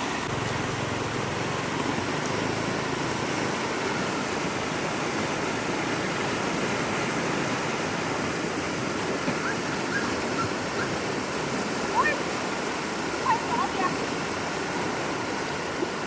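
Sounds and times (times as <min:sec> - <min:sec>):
floodwater rushing: 0:00.0 - 0:16.0.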